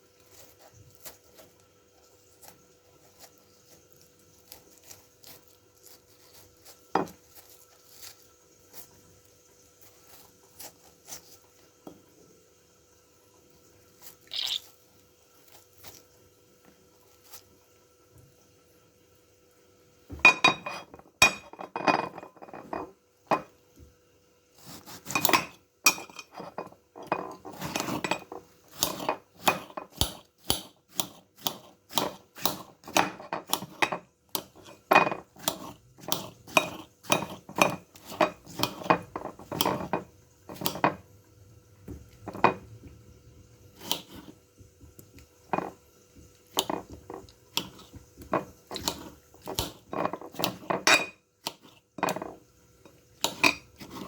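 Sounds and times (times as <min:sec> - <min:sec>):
knife chopping on board: 0:28.7 - 0:41.0, 0:43.4 - 0:50.8.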